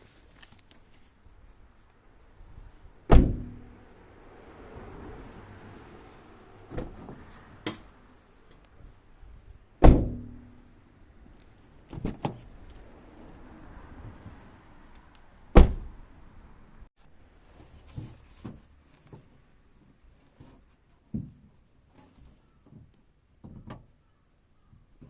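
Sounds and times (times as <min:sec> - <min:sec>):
car door thunk with ring: 0:03.1 - 0:03.6, 0:09.8 - 0:10.6.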